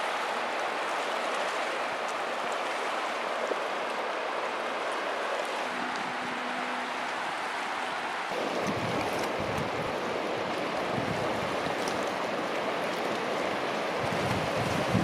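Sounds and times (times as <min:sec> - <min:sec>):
river water rushing: 0:00.0 - 0:15.0
wind buffeting microphone: 0:08.3 - 0:15.0.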